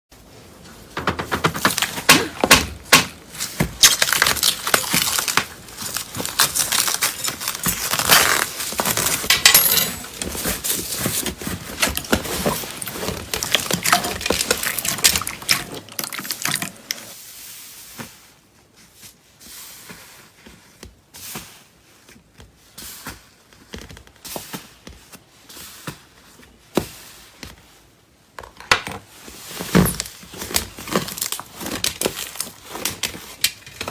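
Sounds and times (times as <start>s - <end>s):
crunchy slime crackling: 1.8s - 9.3s, 10.5s - 17.1s, 30.4s - 33.4s.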